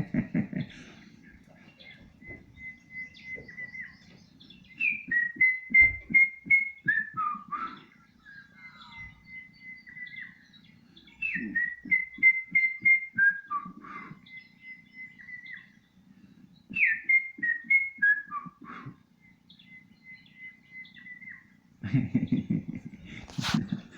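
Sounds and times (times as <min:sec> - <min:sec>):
songbird whistled phrase: 0:02.2 - 0:10.5, 0:16.7 - 0:21.5.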